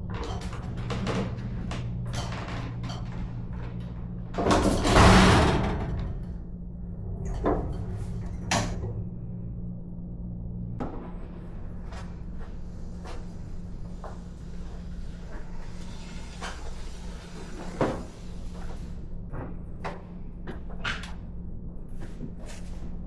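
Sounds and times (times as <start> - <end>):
low hum: 0.0 - 17.0
metal cabinet scraping slide: 4.6 - 6.3.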